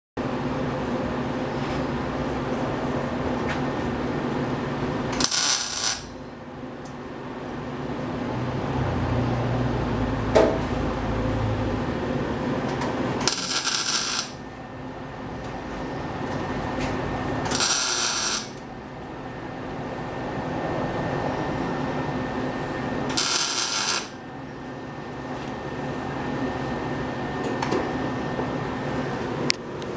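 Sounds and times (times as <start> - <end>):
steady hum: 4.0 - 8.1, 10.8 - 27.4
welder crackling bursts: 5.2 - 6.2, 13.2 - 14.4, 17.5 - 18.6, 23.1 - 24.2.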